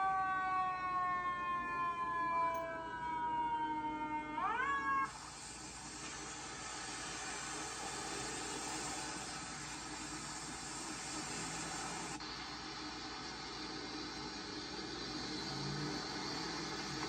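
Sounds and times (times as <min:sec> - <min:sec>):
emergency vehicle siren wailing: 0:00.0 - 0:05.4, 0:14.8 - 0:17.0
steady hiss: 0:05.0 - 0:17.0.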